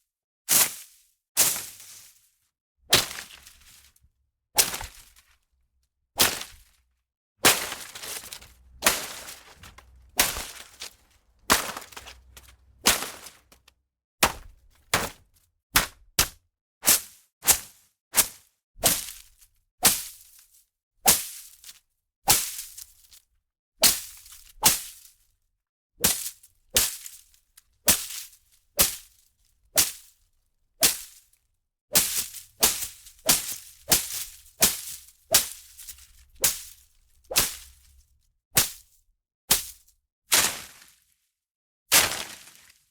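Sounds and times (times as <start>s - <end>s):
sharp whipping hits on foliage: 2.9s - 3.5s, 4.6s - 5.1s, 6.2s - 6.7s, 7.4s - 13.4s, 15.8s - 19.2s, 19.8s - 20.2s, 21.1s - 21.6s, 22.3s - 22.8s, 23.8s - 25.0s, 26.0s - 27.2s, 27.9s - 29.1s, 29.8s - 30.1s, 30.8s - 31.2s, 32.0s - 37.8s, 38.6s - 38.8s, 39.5s - 40.9s, 41.9s - 42.7s
leaves rustling: 7.4s - 13.6s, 42.0s - 42.7s.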